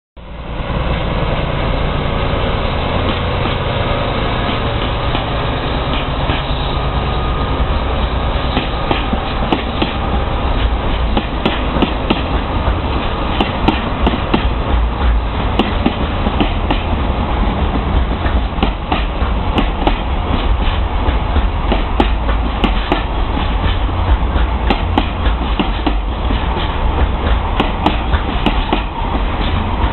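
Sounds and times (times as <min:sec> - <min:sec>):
locomotive engine rumbling: 0:00.2 - 0:29.9
wheels clicking over rail joints: 0:17.6 - 0:29.9.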